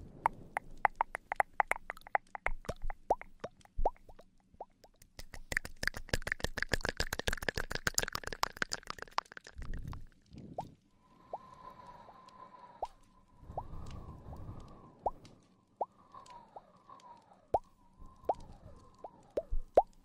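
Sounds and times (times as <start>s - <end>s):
wet tongue clicks and pops: 0.3s - 10.1s, 19.0s - 20.0s.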